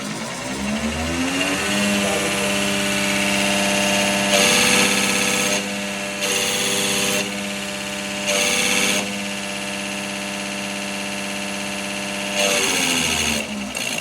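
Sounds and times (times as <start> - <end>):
diesel truck engine running: 0.0 - 6.2.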